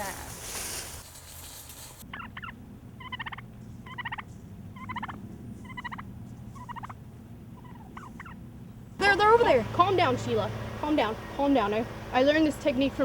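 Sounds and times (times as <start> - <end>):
low steady hum: 0.0 - 13.0
turkey gobbling: 2.1 - 7.0, 7.6 - 8.4.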